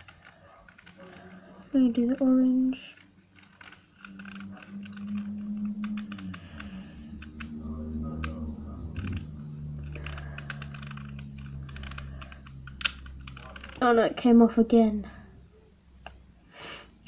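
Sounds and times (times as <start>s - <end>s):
plastic cube clicking: 0.0s - 7.5s, 8.2s - 13.9s
fingernails scraping stickers: 0.0s - 14.0s
low hum: 0.0s - 16.4s.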